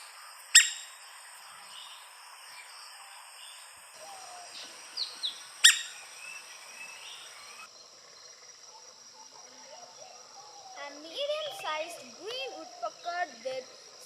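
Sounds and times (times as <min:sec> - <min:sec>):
steady high hiss: 0:00.0 - 0:08.7
birds chirping: 0:00.0 - 0:14.0.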